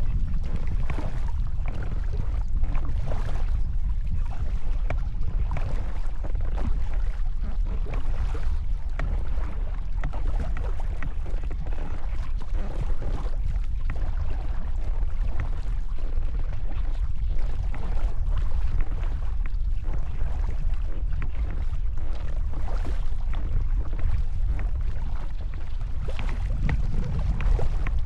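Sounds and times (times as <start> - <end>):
paddle splashing water: 0.0 - 28.0
small clicks and drips: 0.0 - 28.0
wind rumble on microphone: 0.0 - 28.0.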